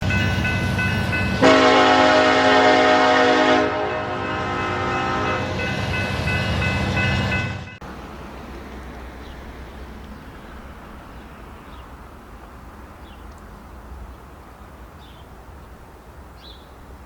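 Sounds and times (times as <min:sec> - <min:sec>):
train rumbling: 0:00.0 - 0:17.0
locomotive horn blast: 0:01.3 - 0:05.8.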